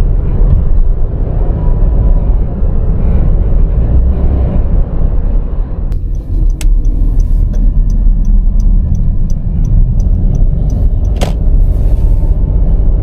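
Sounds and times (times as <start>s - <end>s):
car engine and road rumble: 0.0s - 13.0s
regular ticking: 5.9s - 11.7s
sharp click: 6.0s - 11.6s.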